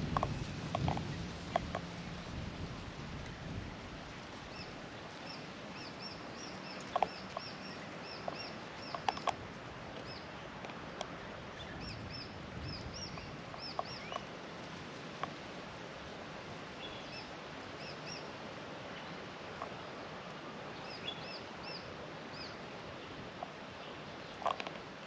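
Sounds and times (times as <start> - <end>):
bird chirping: 4.5 - 10.4, 11.0 - 14.3, 16.8 - 18.3, 20.8 - 22.6.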